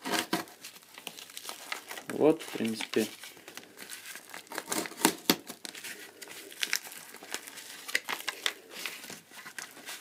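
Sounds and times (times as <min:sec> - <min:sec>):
knife cutting packaging: 0:00.0 - 0:05.8
crinkling and tearing: 0:00.0 - 0:10.0.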